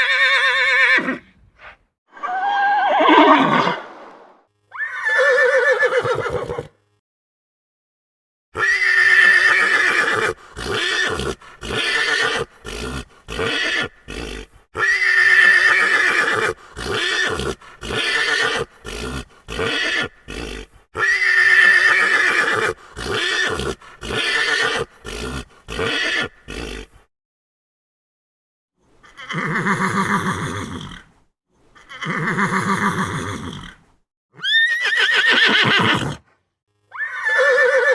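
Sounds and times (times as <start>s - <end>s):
horse neighing: 0.0s - 1.3s, 2.1s - 6.8s, 8.6s - 26.9s, 29.0s - 31.1s, 31.8s - 33.8s, 34.4s - 36.3s, 36.9s - 37.9s.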